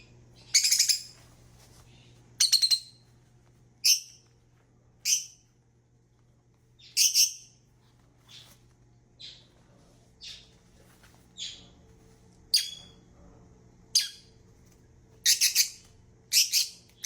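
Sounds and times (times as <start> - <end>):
parrot calling: 15.2 - 17.0.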